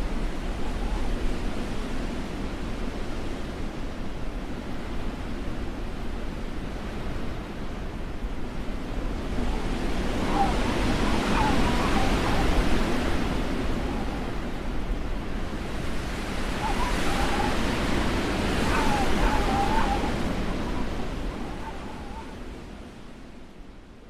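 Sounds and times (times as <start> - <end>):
rushing blizzard wind: 0.0 - 24.0
wavering wind whistle: 8.8 - 23.0.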